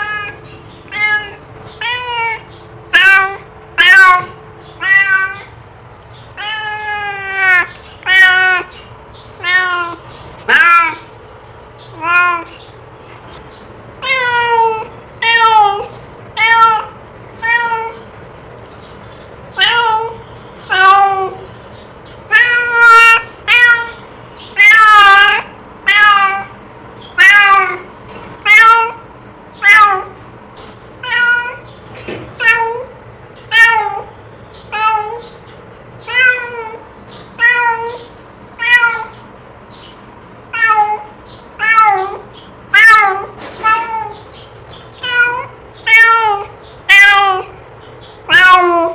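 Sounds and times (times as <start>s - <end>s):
cat meowing: 0.0s - 5.6s, 6.4s - 8.8s, 9.4s - 11.1s, 11.9s - 12.6s, 14.0s - 18.1s, 19.6s - 21.5s, 22.3s - 30.2s, 31.0s - 34.1s, 34.7s - 35.4s, 36.0s - 39.2s, 40.5s - 44.3s, 44.9s - 47.6s, 48.2s - 48.9s.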